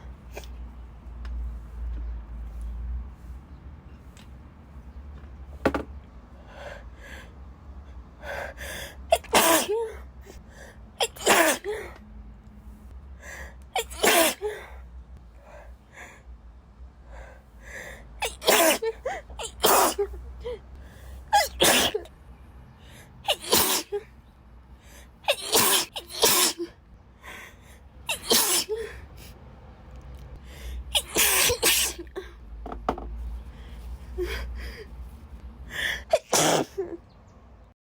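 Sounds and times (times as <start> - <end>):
woman sneezing: 23.3 - 24.0, 25.3 - 26.7, 28.1 - 28.9, 31.0 - 32.2, 36.1 - 36.8.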